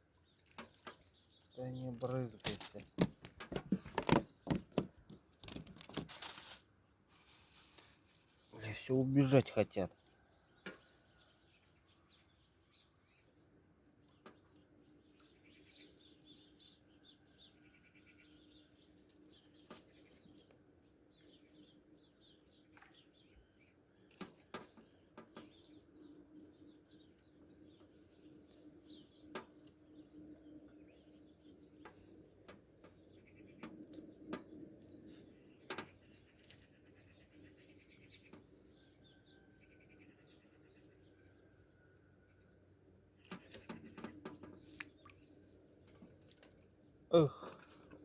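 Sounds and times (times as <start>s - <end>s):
faint birdsong: 0.0s - 48.0s
rustling: 2.3s - 8.7s.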